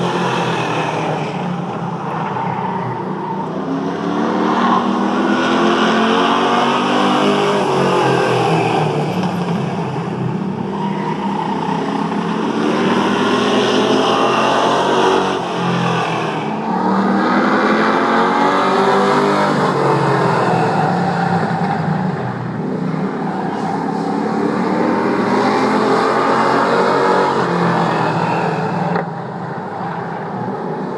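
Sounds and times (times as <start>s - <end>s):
race car engines running hard: 0.0s - 30.9s.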